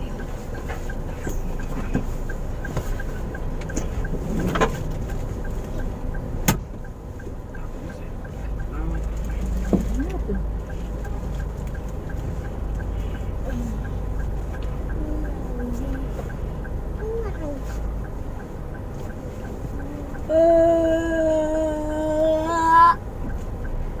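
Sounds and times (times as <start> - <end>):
car engine and road rumble: 0.0 - 24.0
regular light ticking: 0.0 - 24.0.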